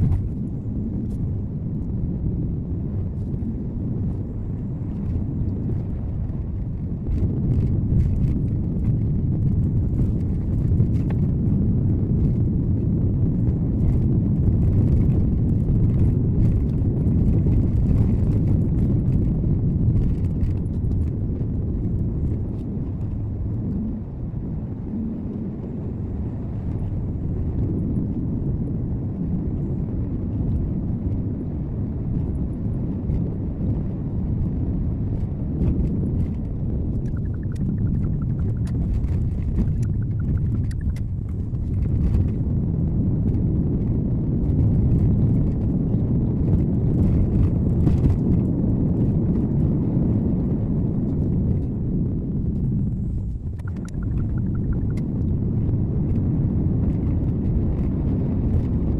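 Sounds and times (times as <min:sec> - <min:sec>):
car engine and tyre rumble: 0:00.0 - 0:58.9.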